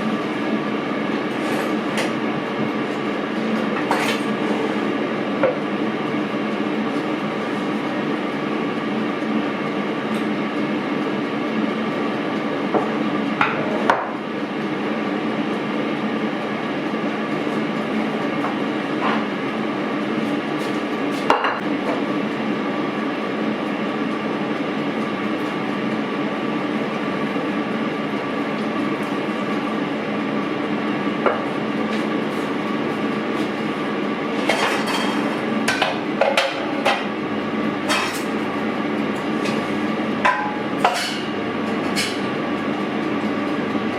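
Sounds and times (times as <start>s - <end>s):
steady mechanical hum: 0.0s - 43.9s
kitchen utensils clinking: 34.4s - 37.0s, 37.9s - 38.3s, 40.3s - 41.3s.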